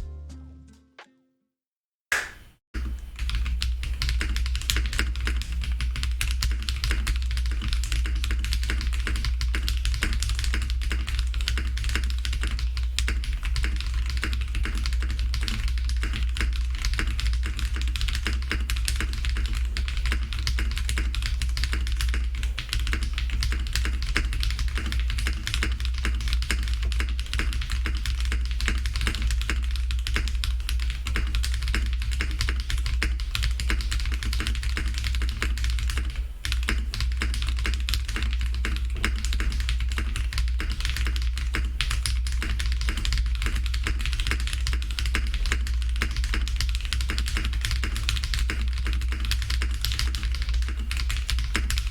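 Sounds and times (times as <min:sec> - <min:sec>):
background music with bass: 0:00.0 - 0:01.1
fast typing on mechanical keyboard: 0:02.8 - 0:51.9.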